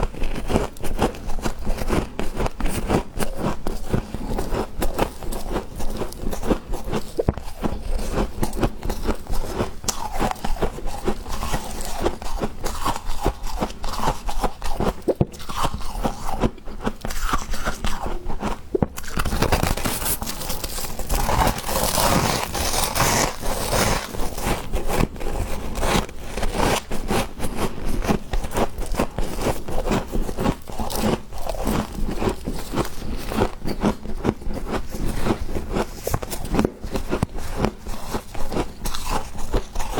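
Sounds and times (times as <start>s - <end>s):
frost being chewed and crunched: 0.0s - 39.9s.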